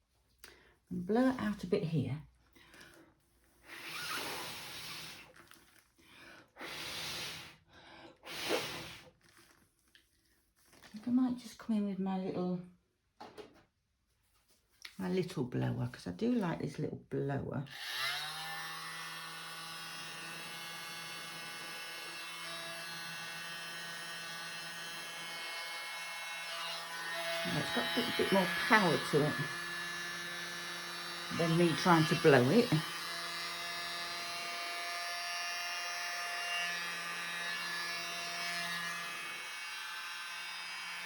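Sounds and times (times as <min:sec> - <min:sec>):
person blowing air puffs: 0:02.8 - 0:09.6
electric blower running: 0:03.7 - 0:05.3, 0:17.7 - 0:41.0.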